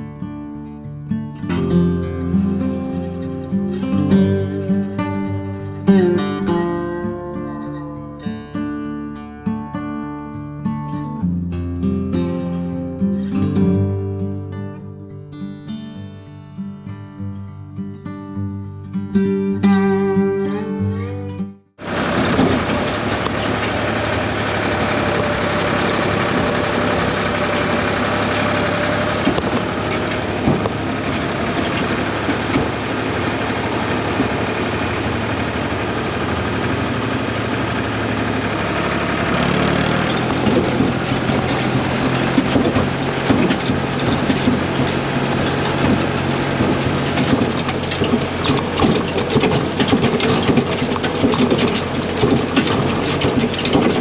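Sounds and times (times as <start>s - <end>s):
farm machine engine running: 0.0s - 16.8s, 18.9s - 54.0s
rapid rattling clatter: 1.5s - 8.2s, 21.8s - 54.0s.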